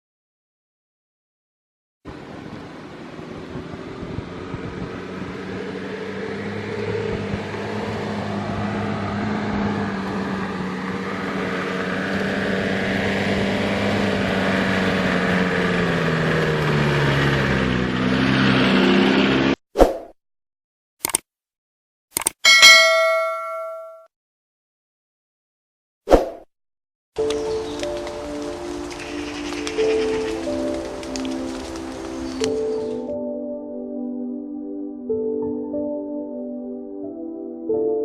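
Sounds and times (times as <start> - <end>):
car engine running: 2.1 - 19.6.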